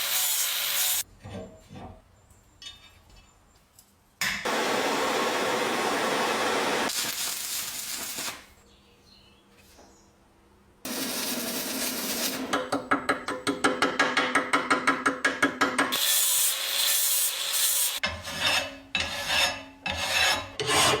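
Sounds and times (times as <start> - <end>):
hand filing metal: 15.9 - 21.0.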